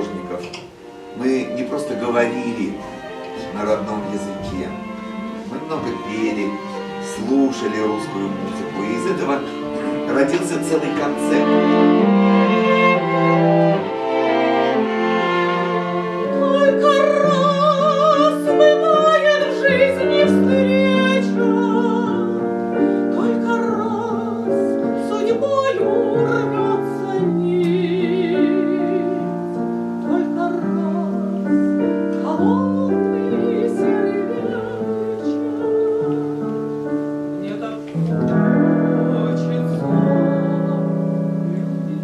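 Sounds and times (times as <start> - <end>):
piano accompaniment: 0.0 - 42.0.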